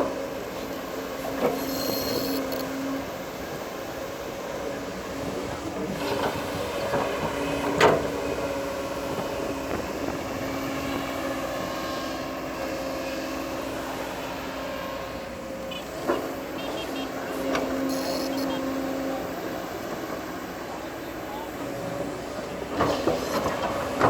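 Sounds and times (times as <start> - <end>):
bulldozer diesel engine running: 0.0 - 24.0.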